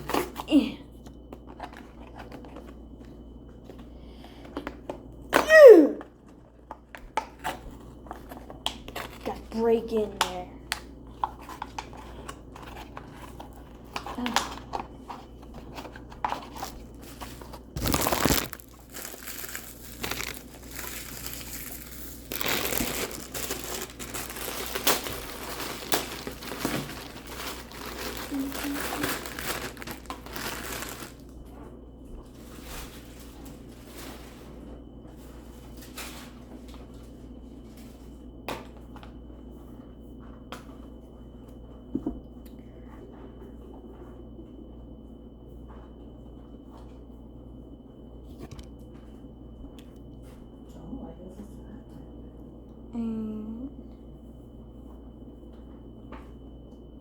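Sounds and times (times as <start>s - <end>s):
steady low hum: 0.0s - 57.0s
packaging rustling: 11.2s - 31.3s.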